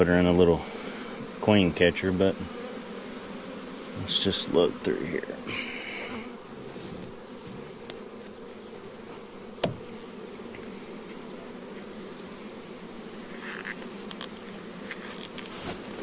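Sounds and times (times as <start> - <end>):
honey bees buzzing: 0.0 - 16.0
sharp knock: 9.6 - 9.9.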